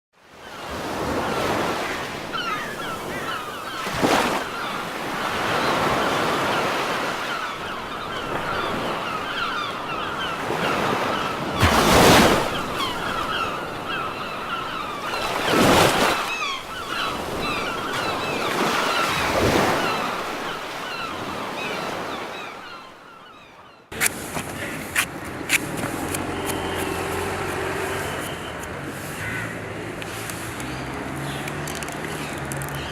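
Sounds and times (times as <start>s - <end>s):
sea and wind noise: 0.2s - 32.9s
seagulls calling: 0.4s - 32.9s.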